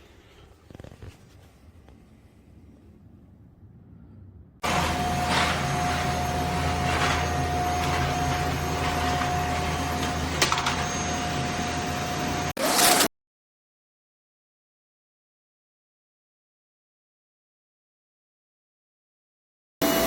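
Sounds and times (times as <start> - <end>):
vacuum cleaner running: 4.6 - 13.1.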